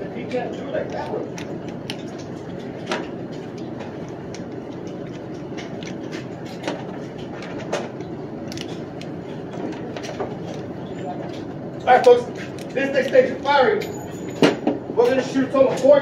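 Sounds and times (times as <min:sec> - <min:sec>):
ventilation hum: 0:00.0 - 0:16.0
pistols and magazines clicking: 0:00.8 - 0:10.7.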